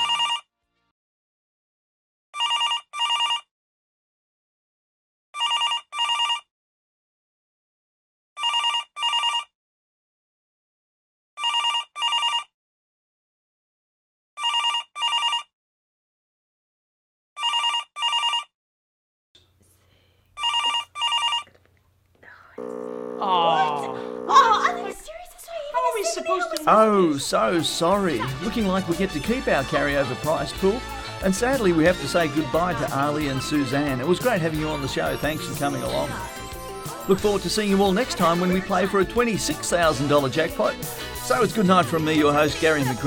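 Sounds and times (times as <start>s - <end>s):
telephone double ring: 0.0s - 0.4s, 22.6s - 25.0s.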